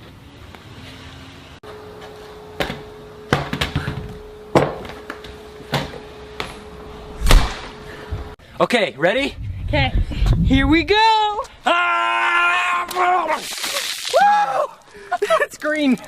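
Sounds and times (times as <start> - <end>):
steady hum: 1.6 - 8.5.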